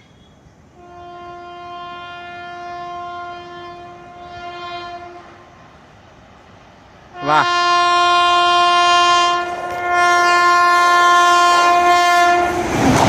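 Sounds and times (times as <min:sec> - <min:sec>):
locomotive horn blast: 0:00.8 - 0:05.6, 0:07.1 - 0:12.8.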